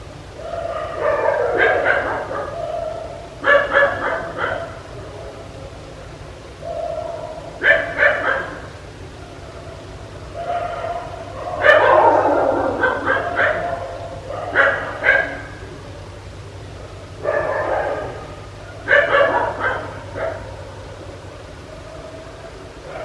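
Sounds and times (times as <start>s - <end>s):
dog barking: 0.4s - 5.5s, 6.6s - 8.8s, 9.6s - 16.0s, 17.0s - 23.0s.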